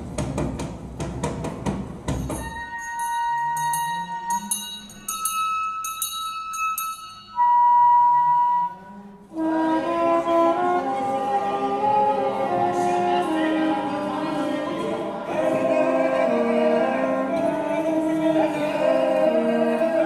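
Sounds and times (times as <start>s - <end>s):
reed instrument: 6.7s - 20.0s
viola: 7.4s - 20.0s.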